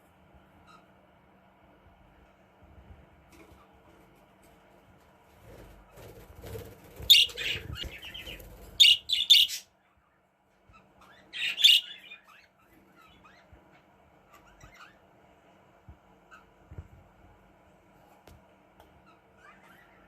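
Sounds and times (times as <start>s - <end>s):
budgerigar chirping: 7.1s - 9.7s, 11.0s - 13.4s.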